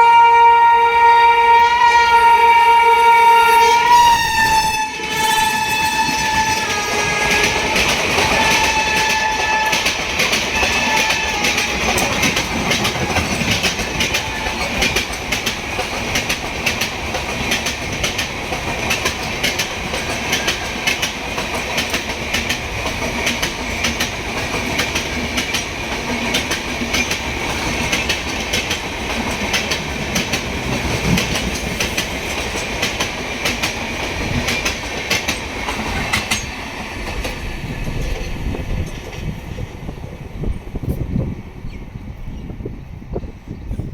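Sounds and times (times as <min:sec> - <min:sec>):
train wheels clattering over rail joints: 0:05.1 - 0:39.8.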